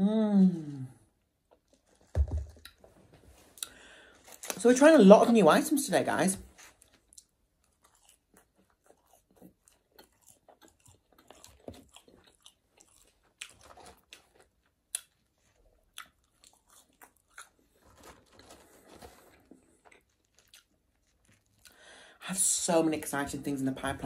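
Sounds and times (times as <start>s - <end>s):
person chewing crunchy food: 6.5s - 21.9s.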